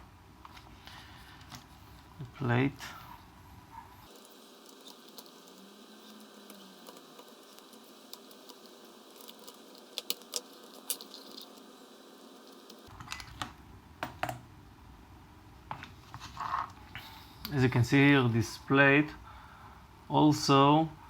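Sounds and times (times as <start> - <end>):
small parts and tools clicking: 4.1 - 14.4.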